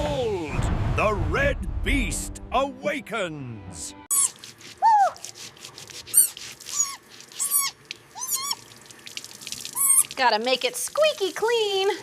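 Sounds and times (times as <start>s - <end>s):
high-pitched animal squeaks: 4.1s - 5.2s, 6.1s - 8.7s, 9.8s - 10.1s.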